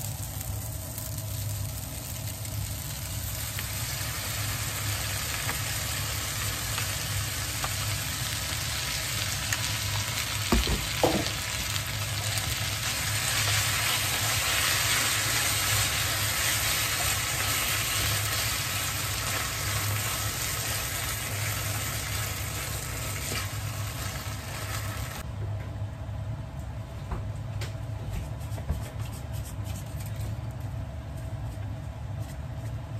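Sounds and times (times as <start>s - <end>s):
food sizzling in a frying pan: 0.0s - 25.2s.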